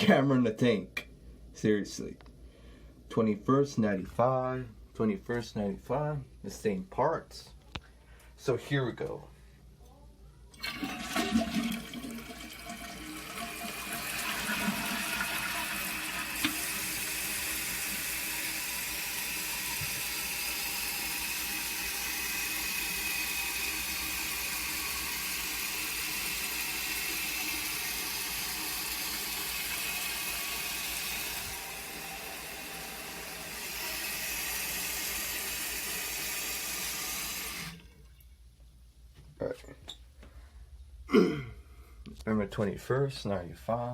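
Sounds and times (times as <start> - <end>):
toilet flushing: 10.5 - 38.4
hiss of tank refilling: 10.7 - 37.8.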